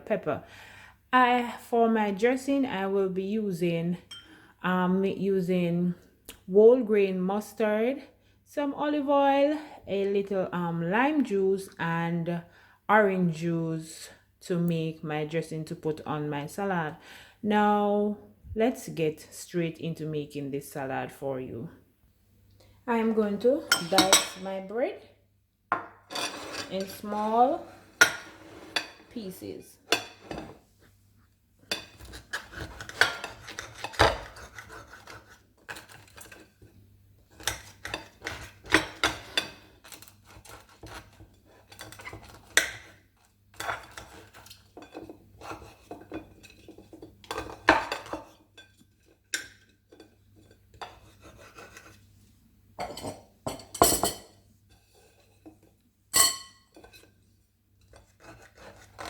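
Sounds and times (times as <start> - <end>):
knife rasping through bread: 31.8 - 36.7, 37.3 - 47.1, 48.8 - 52.2, 57.8 - 59.0.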